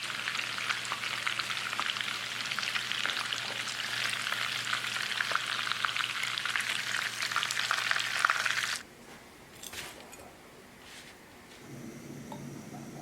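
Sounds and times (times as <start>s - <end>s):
chicken sizzling in oil: 0.0s - 8.8s.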